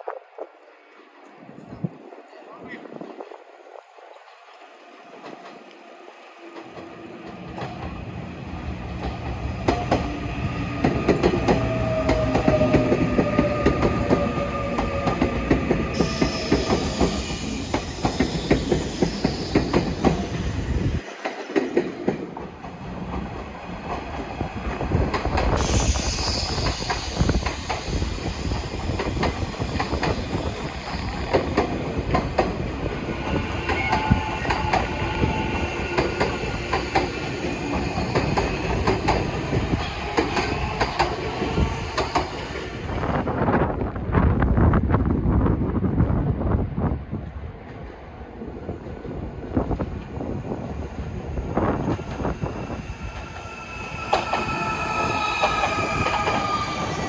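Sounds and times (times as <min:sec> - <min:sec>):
train wheels clacking on rails: 0:08.9 - 0:42.7, 0:51.7 - 0:57.0
train whine falling in pitch: 0:51.8 - 0:57.0.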